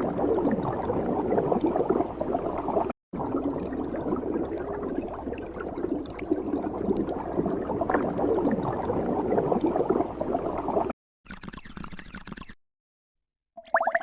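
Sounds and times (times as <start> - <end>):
water bubbling: 0.0 - 10.9.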